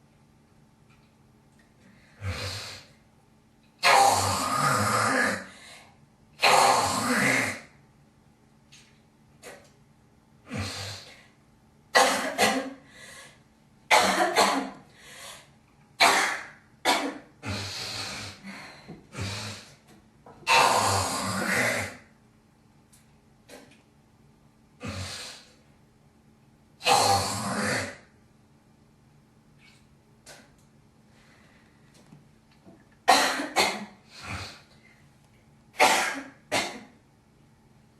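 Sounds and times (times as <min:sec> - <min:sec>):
woman coughing: 0:12.0 - 0:12.8, 0:13.9 - 0:14.8, 0:33.1 - 0:34.0, 0:35.8 - 0:36.9.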